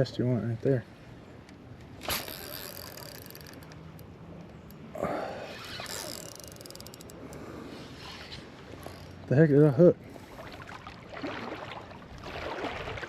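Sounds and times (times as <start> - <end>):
reel scrape: 2.0 - 3.7, 5.3 - 9.3
fishing reel click: 2.0 - 4.1, 5.8 - 7.4
reel ticking: 5.8 - 7.5.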